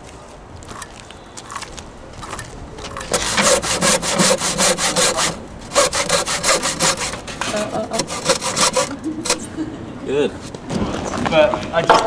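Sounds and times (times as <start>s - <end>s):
handsaw cutting timber: 3.1s - 9.5s.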